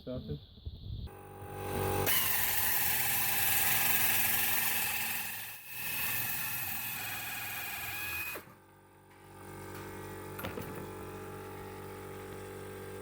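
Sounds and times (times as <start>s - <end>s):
air shears cutting sheet metal: 1.5s - 8.5s.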